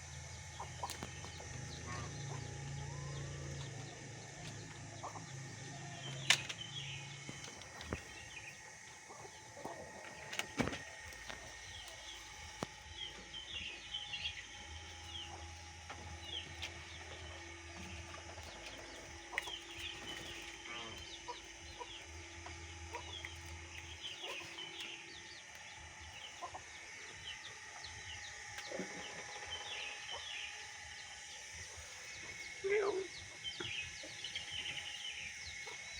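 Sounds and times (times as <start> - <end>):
birds chirping: 0.0 - 35.9
low steady hum: 0.0 - 35.9.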